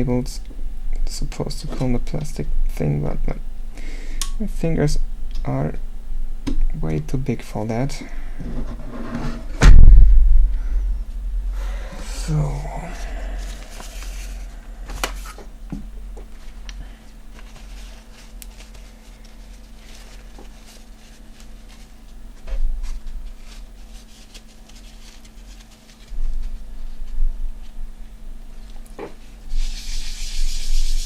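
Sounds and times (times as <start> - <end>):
faint steady hum: 0.0 - 31.0
dull low thumps: 9.6 - 16.2.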